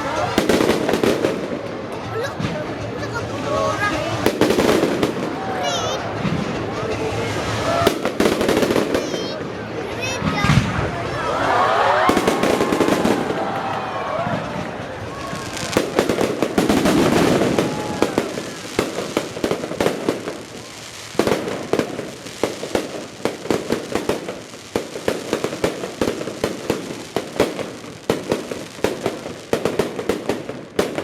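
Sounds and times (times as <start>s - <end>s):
fireworks bangs and crackles: 0.0s - 31.0s.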